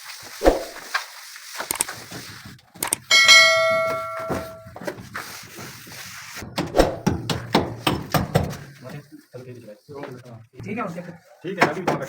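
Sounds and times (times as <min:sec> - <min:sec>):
metal object ringing when struck: 0:03.1 - 0:04.7.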